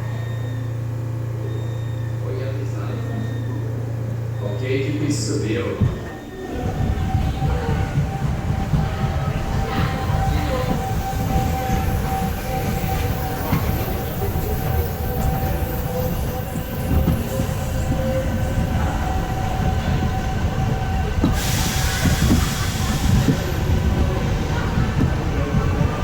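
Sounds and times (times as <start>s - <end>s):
ride train rumbling on track: 0.0s - 26.0s
hiss: 21.4s - 23.6s.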